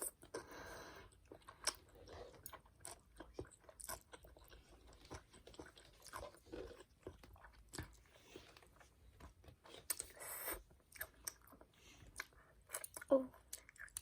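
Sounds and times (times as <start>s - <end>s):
child chewing noodles: 0.0s - 14.0s.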